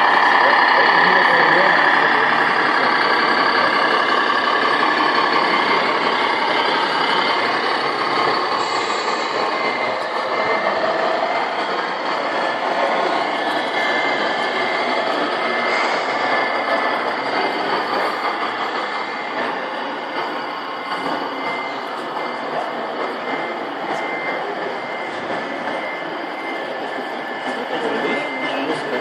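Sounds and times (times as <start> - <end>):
recorded truck engine sound: 0.0 - 29.0
short beeps: 19.0 - 29.0.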